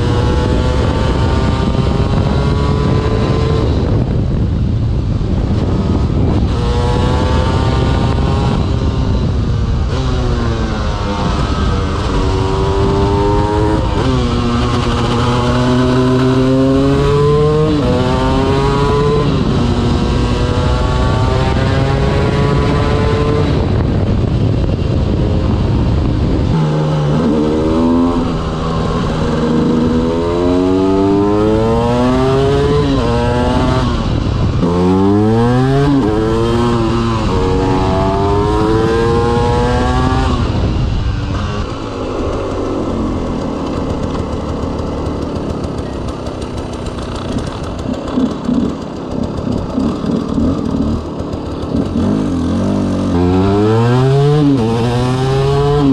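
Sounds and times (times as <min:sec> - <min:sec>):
motorcycle engine accelerating: 0:00.0 - 0:55.9.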